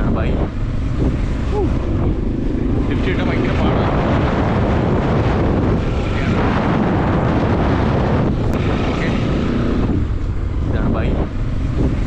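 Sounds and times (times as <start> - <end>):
vehicle engine and road noise: 0.0 - 12.0
wind buffeting microphone: 0.0 - 12.0.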